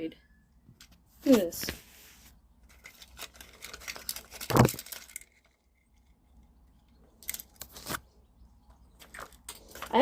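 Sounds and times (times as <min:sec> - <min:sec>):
clock pieces clinking and rattling: 0:02.6 - 0:07.6.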